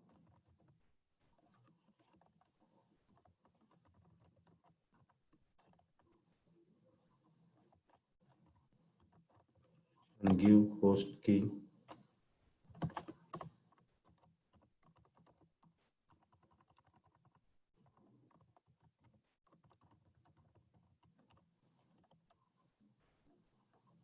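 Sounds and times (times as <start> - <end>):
typing on computer keyboard: 0.0 - 0.8, 1.4 - 6.2, 7.6 - 10.8, 12.7 - 22.7.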